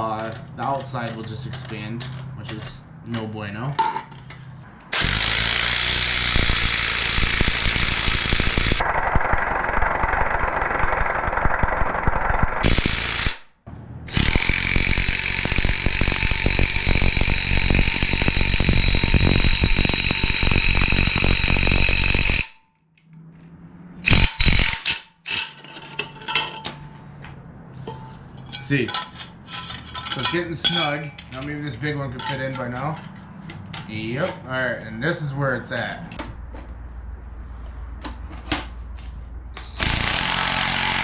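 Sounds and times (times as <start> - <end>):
impact wrench hammering: 39.6 - 41.0.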